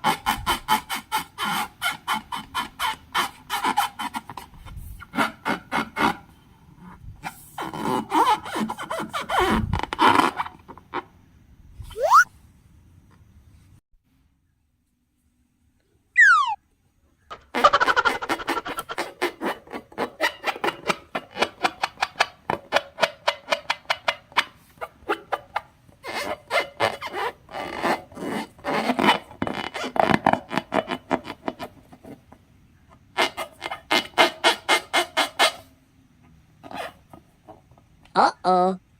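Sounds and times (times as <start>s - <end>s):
falling whistle-like sound: 11.8s - 12.3s, 16.2s - 16.6s.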